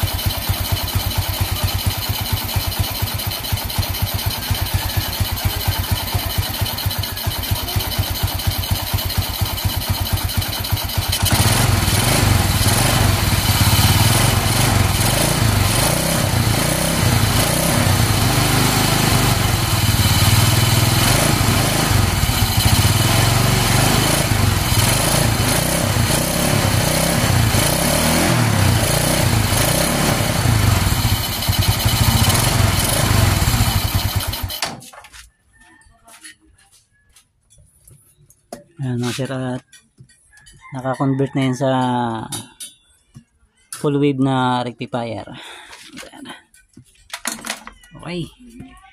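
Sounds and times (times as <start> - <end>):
motorcycle engine revving: 0.0 - 34.6.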